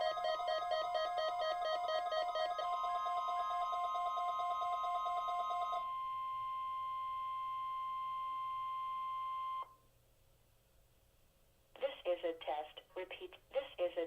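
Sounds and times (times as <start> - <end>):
steady alarm tone: 0.0 - 9.7.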